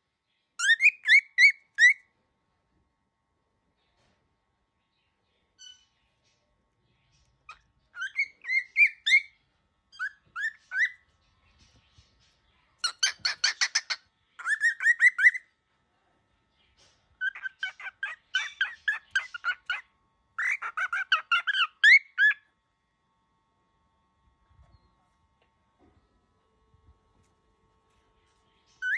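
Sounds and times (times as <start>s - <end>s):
cockatiel squawking: 0.6s - 2.0s, 7.5s - 9.3s, 10.0s - 11.0s, 12.8s - 15.4s, 17.2s - 22.4s.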